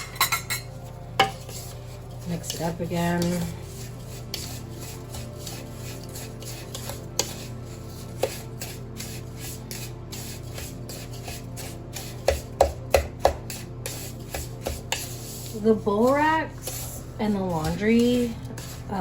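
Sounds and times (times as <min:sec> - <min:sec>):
steady low hum: 0:00.0 - 0:19.0
utensil scraping gritty mixture: 0:00.0 - 0:19.0
utensil knocking on bowl: 0:08.2 - 0:08.4, 0:12.0 - 0:15.1.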